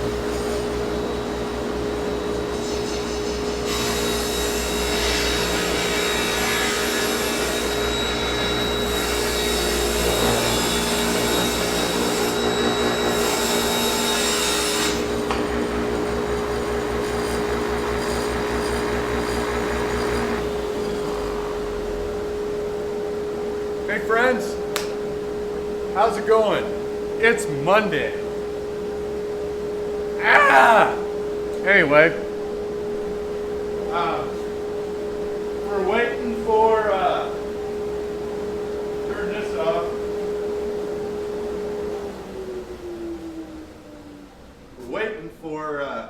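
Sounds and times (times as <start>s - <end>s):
table saw blade humming: 0.0s - 21.6s
saw cutting through wood: 2.6s - 21.6s.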